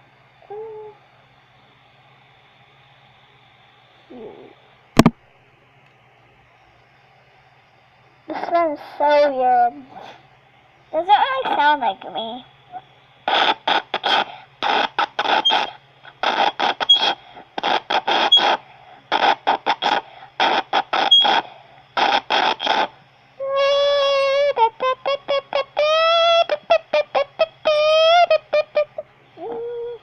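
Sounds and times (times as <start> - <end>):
child's voice through voice changer: 8.3 - 10.0, 11.0 - 12.5, 23.4 - 30.0.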